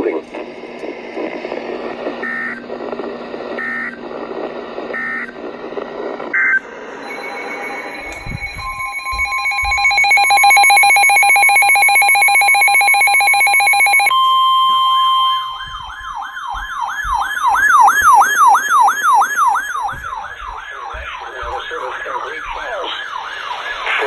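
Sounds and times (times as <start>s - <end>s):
steady alarm tone: 1.2s - 5.8s, 6.4s - 24.0s
wailing siren alarm: 1.2s - 24.0s
fast-pulsing beep: 6.4s - 15.7s, 17.0s - 23.2s.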